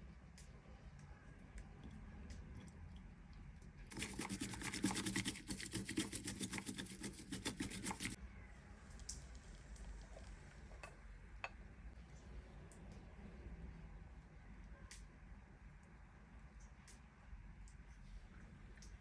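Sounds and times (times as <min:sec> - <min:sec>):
bamboo whisk whisking tea: 0:03.9 - 0:08.2.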